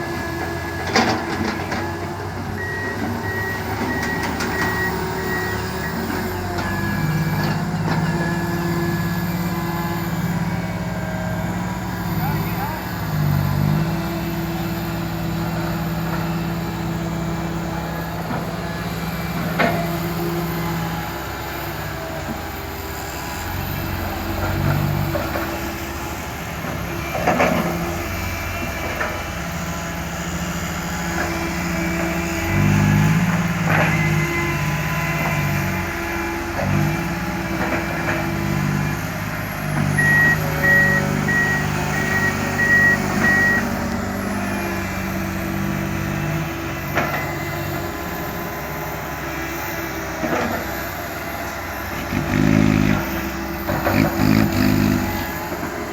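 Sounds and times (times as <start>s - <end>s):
heavy diesel engines running: 0.0s - 55.9s
reversing alarm beeps: 2.6s - 9.7s, 39.9s - 44.0s.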